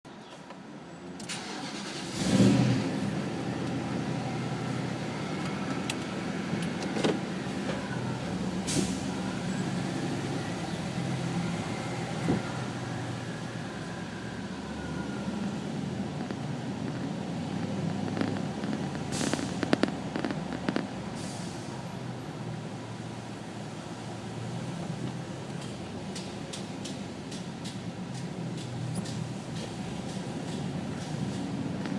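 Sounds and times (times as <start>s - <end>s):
pickup engine starting and running: 1.2s - 12.7s.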